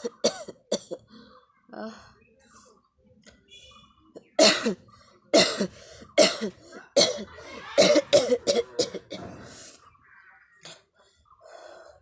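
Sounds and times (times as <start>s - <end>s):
person coughing: 5.4s - 9.3s.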